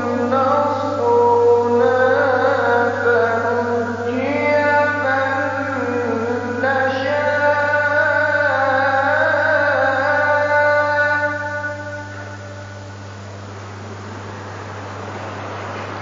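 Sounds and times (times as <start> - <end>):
man chanting melodically: 0.0 - 12.7.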